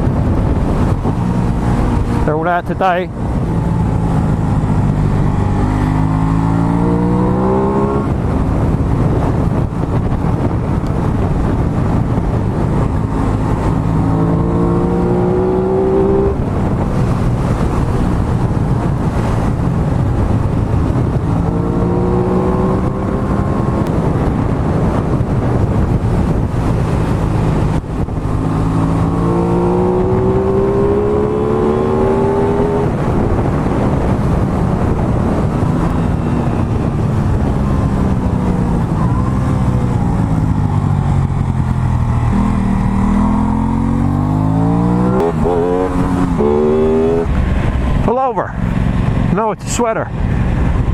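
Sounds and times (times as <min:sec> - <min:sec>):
motorcycle engine accelerating: 0:00.0 - 0:49.4
wind and road noise: 0:00.0 - 0:50.9.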